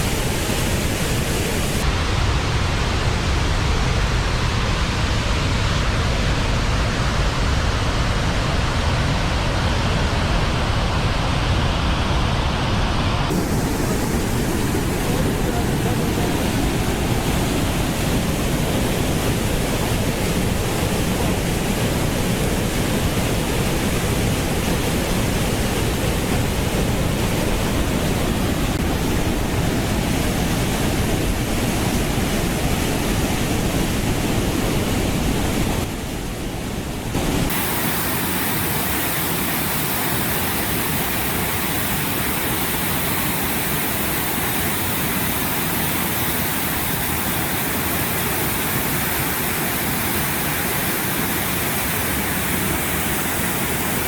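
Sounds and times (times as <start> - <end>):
waterfall rushing: 0.0 - 2.3, 13.3 - 54.0.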